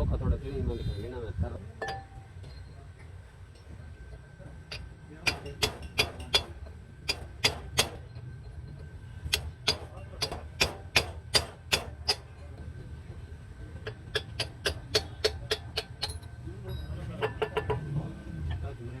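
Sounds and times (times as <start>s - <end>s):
sharp metallic taps ringing: 1.8s - 2.7s, 4.7s - 8.3s, 9.3s - 12.4s, 13.8s - 16.4s
steady low hum: 3.2s - 16.5s.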